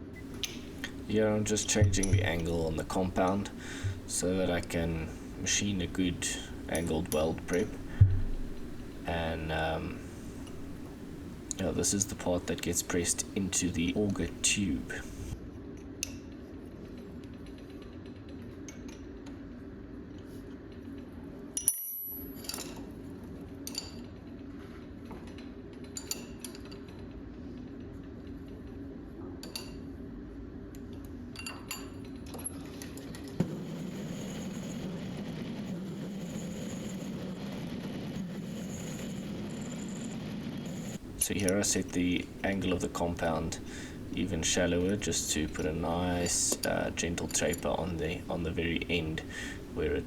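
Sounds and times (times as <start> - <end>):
metal lathe humming: 0.0 - 15.4, 33.5 - 50.0
sharp metallic clinks: 0.2 - 15.4.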